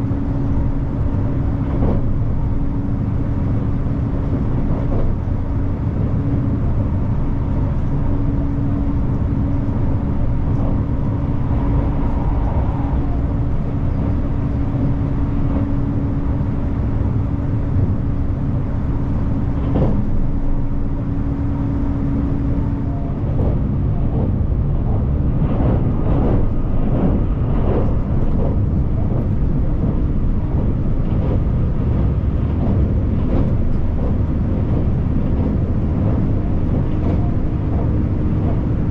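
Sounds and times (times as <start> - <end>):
constant hum: 0.0 - 38.9
train running rumble: 0.0 - 38.9.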